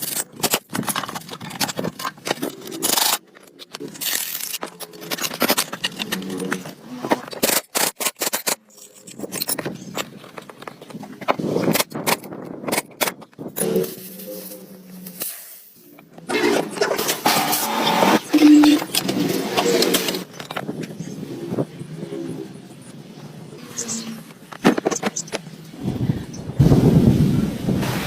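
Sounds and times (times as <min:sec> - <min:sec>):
metal parts scraping and clinking: 0:00.0 - 0:21.2.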